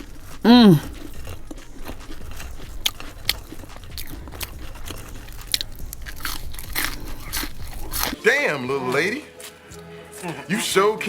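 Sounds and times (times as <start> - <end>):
chewing crunchy fries: 0.0 - 8.2.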